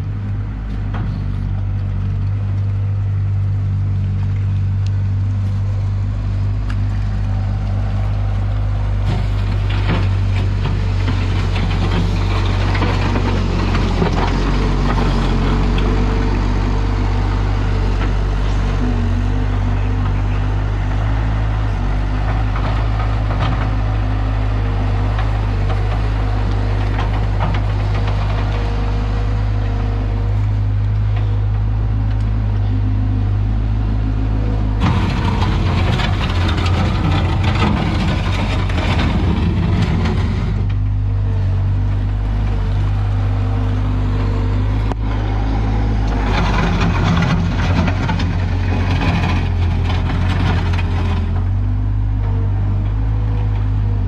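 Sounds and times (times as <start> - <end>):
loader engine running: 0.0 - 54.0
machine clattering: 34.8 - 40.7.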